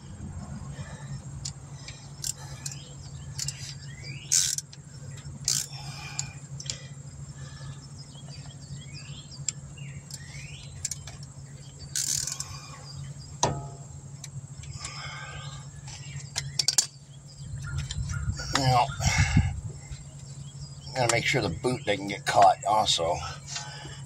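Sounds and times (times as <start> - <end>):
steady low hum: 0.0 - 24.0
caliper tool squeaks and clicks: 11.9 - 12.5.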